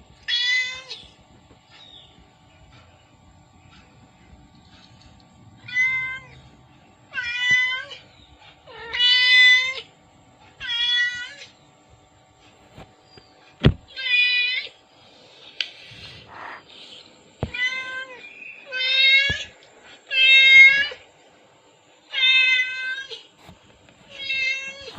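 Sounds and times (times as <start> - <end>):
cat meowing: 5.6 - 6.4.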